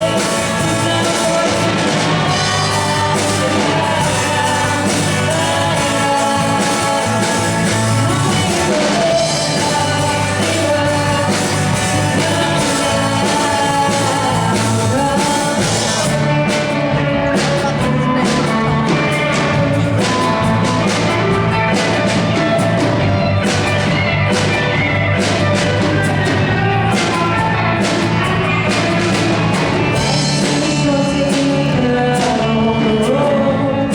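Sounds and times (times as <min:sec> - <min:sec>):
person singing: 0:00.0 - 0:33.9
rock band playing live: 0:00.0 - 0:33.9.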